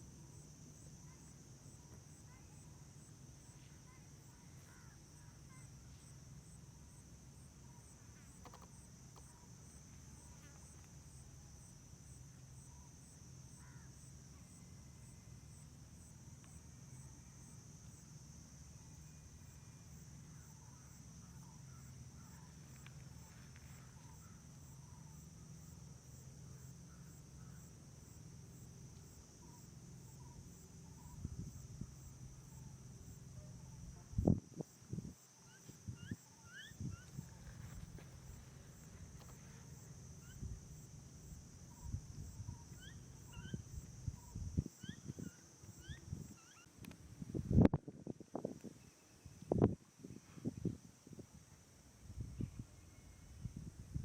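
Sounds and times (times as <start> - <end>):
insect buzz: 0.0 - 54.0
pulsing insect chirp: 0.0 - 54.0
faint bird calls: 35.4 - 40.5, 41.6 - 46.7.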